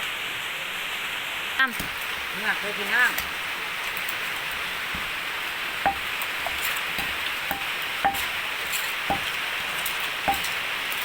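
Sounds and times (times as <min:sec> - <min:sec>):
steady hiss: 0:00.0 - 0:11.0
wooden pestle knocking in mortar: 0:04.9 - 0:05.2, 0:05.9 - 0:08.4, 0:09.1 - 0:09.4, 0:10.3 - 0:10.6.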